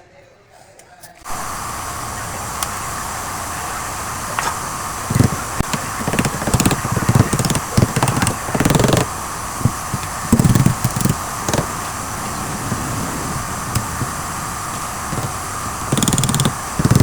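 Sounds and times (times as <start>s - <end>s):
steady background hum: 1.2s - 17.0s
sharp clicks: 1.3s - 17.0s
hand tools knocking and clattering: 4.4s - 12.8s.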